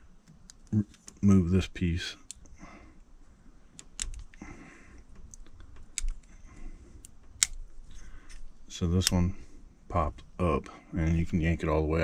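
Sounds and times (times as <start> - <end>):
plastic plug clicking and rattling: 3.8 - 4.4.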